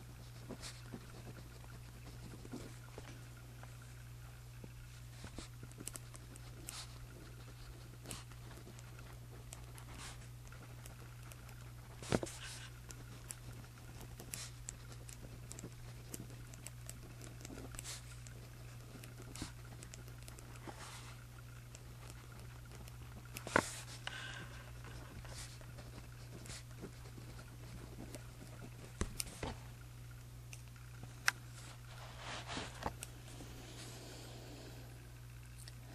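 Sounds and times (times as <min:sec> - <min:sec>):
steady low hum: 0:00.0 - 0:35.9
pen scratching on paper: 0:05.2 - 0:21.2, 0:21.8 - 0:29.6.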